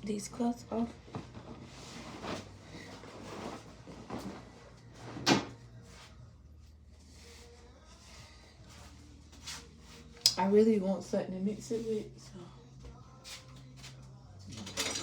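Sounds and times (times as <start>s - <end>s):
kitchen knocks and clatters: 14.5s - 15.0s.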